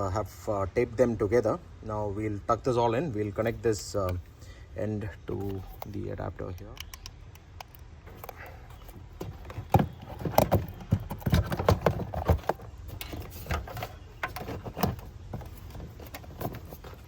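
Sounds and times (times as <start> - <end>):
wiring and connectors clicking: 5.4 - 17.0.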